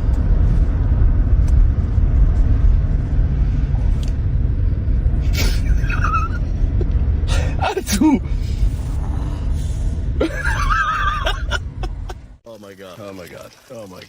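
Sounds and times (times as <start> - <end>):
low rumbling noise: 0.0 - 12.4.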